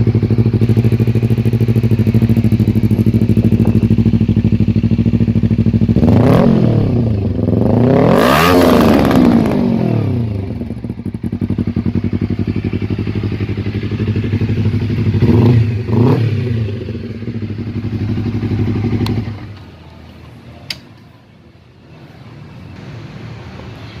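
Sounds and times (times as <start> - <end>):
motorcycle engine idling and revving: 0.0 - 20.8.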